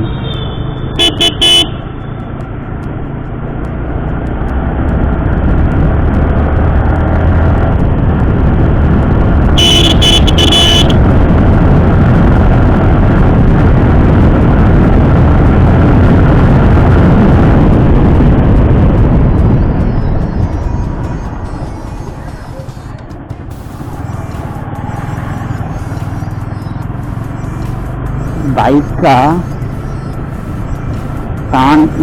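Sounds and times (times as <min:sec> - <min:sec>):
vehicle horn toots: 0:00.1 - 0:01.9, 0:09.5 - 0:11.1
motorcycle engine under way: 0:02.0 - 0:17.9, 0:23.5 - 0:31.8
wind rush at microphone: 0:03.4 - 0:25.6.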